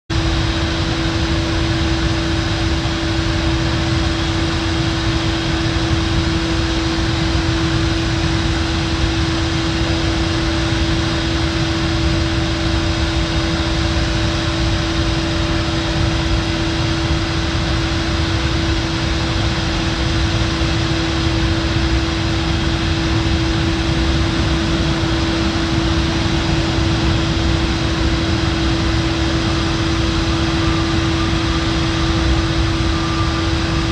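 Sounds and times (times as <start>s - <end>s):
constant humming tone: 0.1s - 33.9s
industrial machinery drone: 0.1s - 33.9s.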